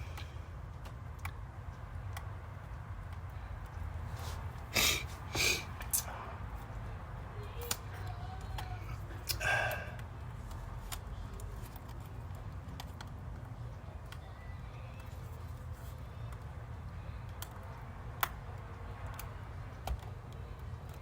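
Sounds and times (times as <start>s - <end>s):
steady low hum: 0.0s - 2.0s
light clicks and taps: 17.2s - 21.0s.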